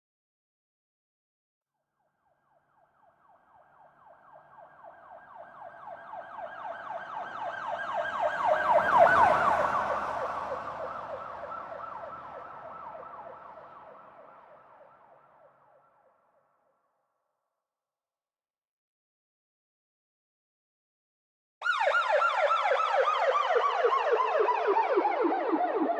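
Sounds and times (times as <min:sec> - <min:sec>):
police siren yelping: 0:03.3 - 0:14.0, 0:21.6 - 0:25.9
low road rumble: 0:05.2 - 0:14.0.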